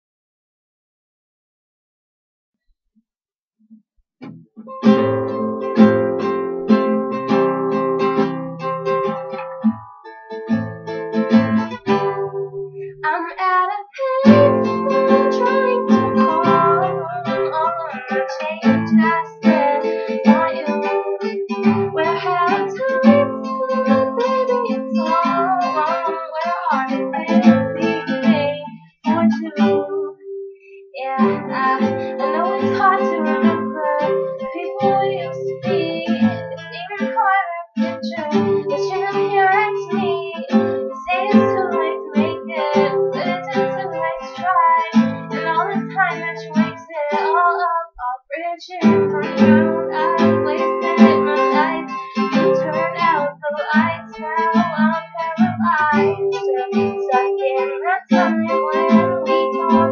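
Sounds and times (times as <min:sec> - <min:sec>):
acoustic guitar strumming: 0:04.2 - 0:59.9
person singing: 0:11.2 - 0:59.9.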